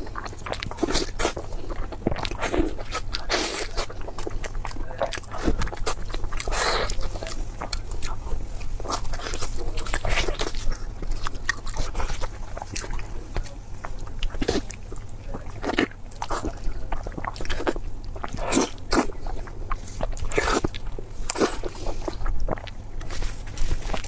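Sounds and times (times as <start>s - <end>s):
chewing with wet mouth clicks: 0.0s - 24.0s
crunchy bites: 0.0s - 24.0s.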